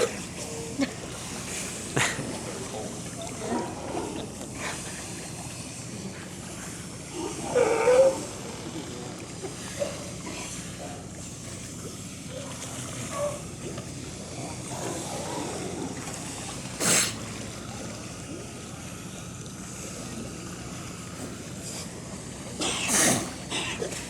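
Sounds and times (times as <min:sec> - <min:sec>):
seal sneezing: 0:00.0 - 0:02.5, 0:09.6 - 0:11.1, 0:16.7 - 0:17.4, 0:22.5 - 0:24.0
steady background noise: 0:00.0 - 0:24.0.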